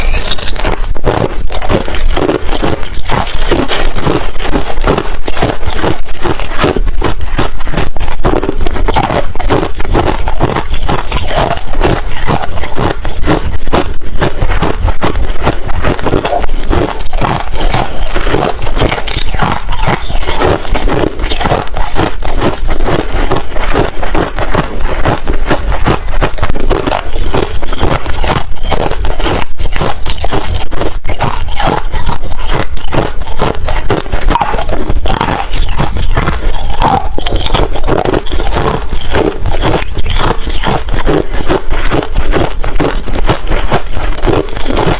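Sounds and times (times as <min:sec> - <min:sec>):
ice being chewed: 0:00.0 - 0:44.9.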